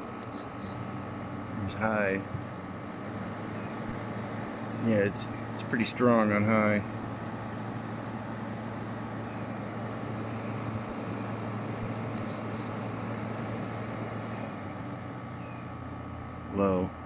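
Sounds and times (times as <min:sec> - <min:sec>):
air conditioner running: 0:00.0 - 0:17.0
short control panel beeps: 0:00.3 - 0:00.8, 0:12.2 - 0:12.8.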